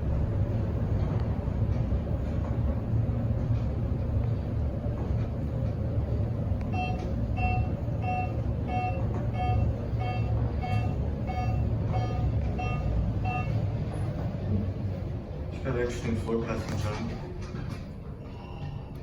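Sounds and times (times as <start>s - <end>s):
elevator car low rumble: 0.0s - 19.0s
elevator short electronic beeps: 6.7s - 14.0s, 18.1s - 19.0s.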